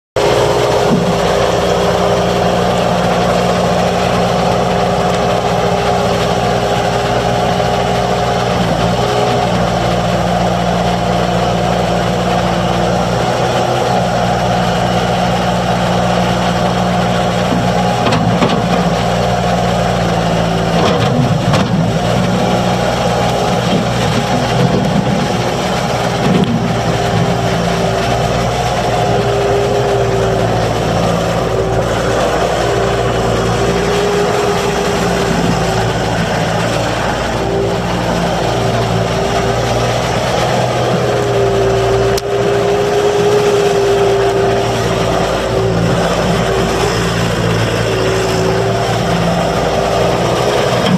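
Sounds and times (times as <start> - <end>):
diesel engine running steadily: 0.0 - 50.9.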